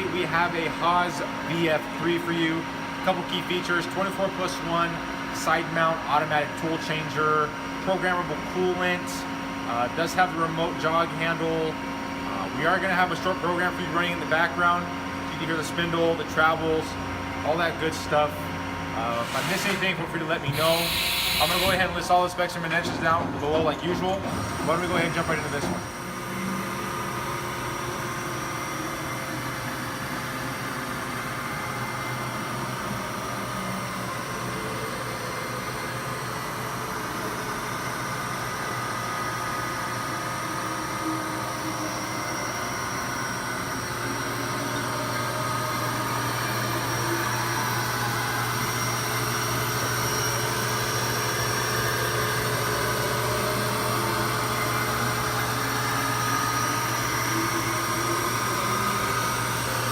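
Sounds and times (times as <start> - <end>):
machine hum with spindle whine: 14.1 - 23.0, 24.2 - 59.9.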